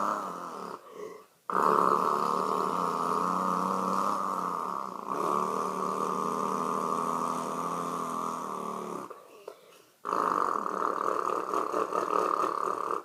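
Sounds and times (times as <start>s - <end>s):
person imitating truck engine: 0.0s - 0.9s, 1.5s - 9.2s.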